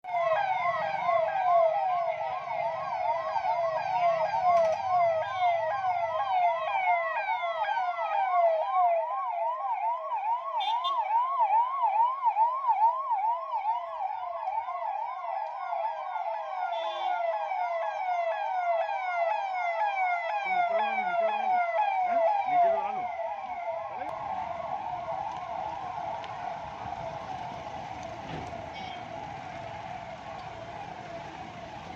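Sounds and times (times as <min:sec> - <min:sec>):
police sirens yelping: 0:00.0 - 0:31.9
low engine rumble: 0:24.1 - 0:31.9.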